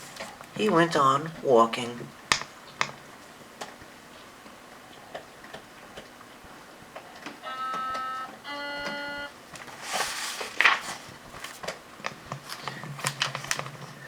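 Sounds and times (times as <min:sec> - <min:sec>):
two-note cuckoo clock call: 0:07.4 - 0:09.4
paper rustling: 0:09.5 - 0:14.0.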